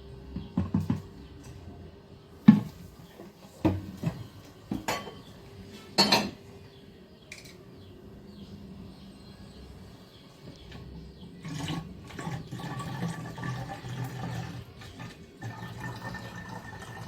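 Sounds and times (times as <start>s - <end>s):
dishes knocking and clinking: 0.4s - 1.0s, 3.6s - 5.3s, 6.0s - 6.4s.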